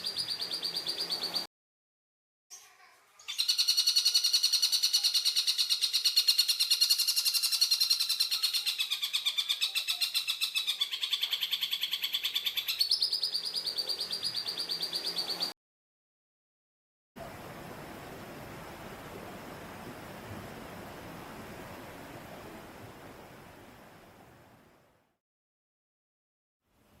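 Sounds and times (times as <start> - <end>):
bird rattling trill call: 3.2 - 15.4.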